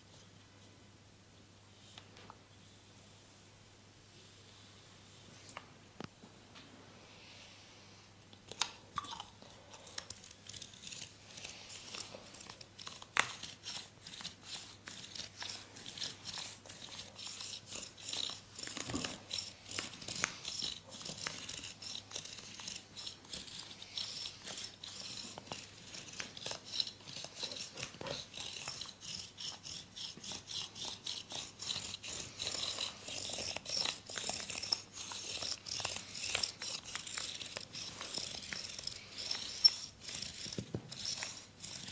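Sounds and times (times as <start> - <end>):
fingers scratching and rubbing: 9.8 - 41.9.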